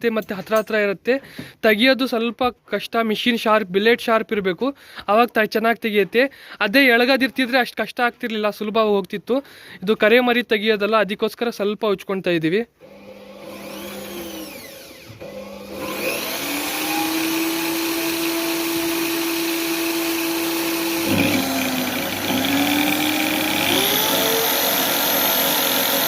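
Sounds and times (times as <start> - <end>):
grinder motor running: 12.8 - 26.0.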